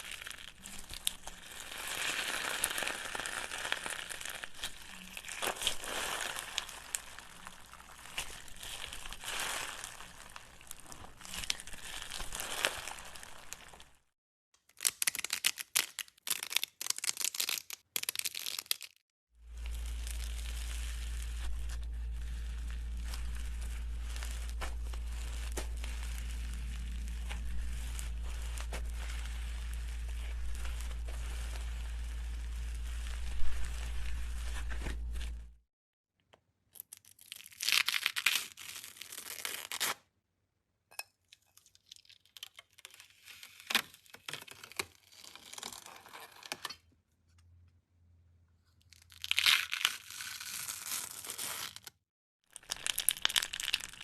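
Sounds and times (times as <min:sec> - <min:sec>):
crunching of mixture being stirred: 0:00.0 - 0:14.1, 0:19.4 - 0:35.6.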